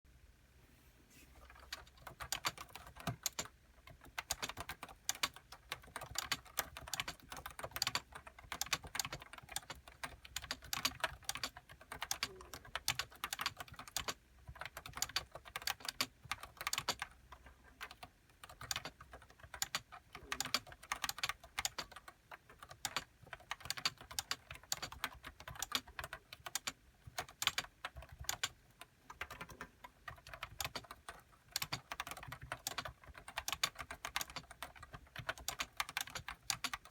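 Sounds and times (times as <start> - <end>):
keyboard typing: 1.4 - 36.9.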